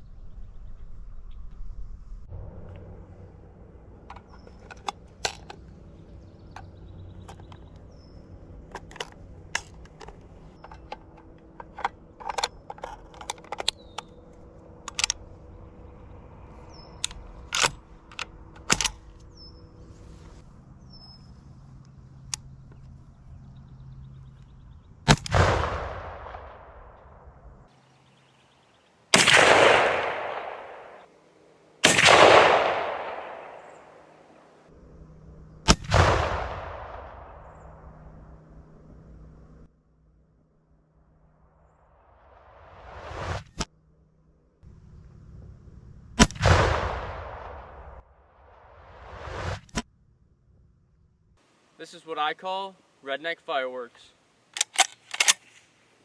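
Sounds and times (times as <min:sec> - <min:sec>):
sharp clicks and pops: 0:04.0 - 0:05.8, 0:06.5 - 0:07.9, 0:08.6 - 0:14.2, 0:14.8 - 0:15.3, 0:17.0 - 0:19.3, 0:54.5 - 0:55.7
bird chirps: 0:04.2 - 0:04.7, 0:05.6 - 0:08.4, 0:13.7 - 0:14.3, 0:15.4 - 0:17.1, 0:19.2 - 0:25.0, 0:33.4 - 0:34.1
shotgun blasts with echo: 0:25.1 - 0:27.3, 0:29.1 - 0:31.1, 0:31.8 - 0:34.2, 0:35.6 - 0:37.5, 0:46.2 - 0:48.0.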